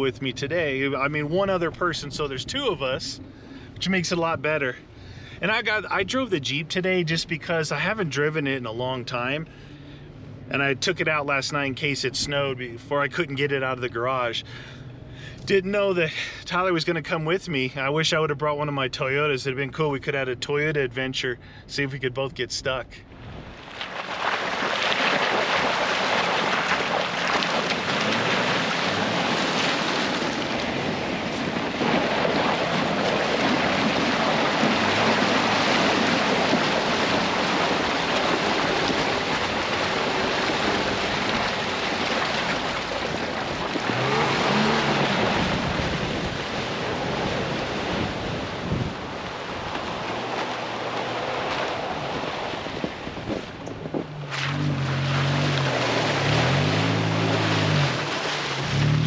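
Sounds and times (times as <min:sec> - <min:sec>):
engine low hum: 0:00.0 - 0:17.8, 0:20.0 - 0:22.1, 0:25.9 - 0:59.0
tyres rushing through snow: 0:23.4 - 0:53.5, 0:54.1 - 0:59.0.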